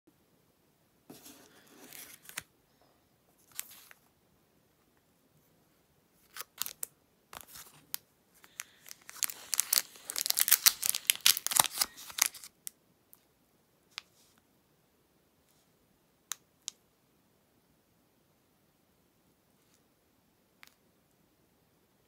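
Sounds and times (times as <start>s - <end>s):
foil wrapper crinkling and tearing: 6.3s - 12.6s.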